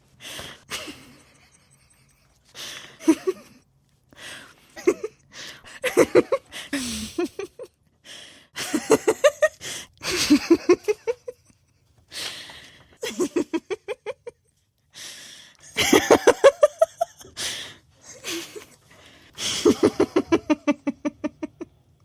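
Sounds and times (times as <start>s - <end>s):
woman laughing: 3.0s - 3.6s, 4.8s - 7.8s, 8.6s - 11.6s, 13.0s - 14.4s, 15.7s - 17.4s, 19.4s - 21.7s.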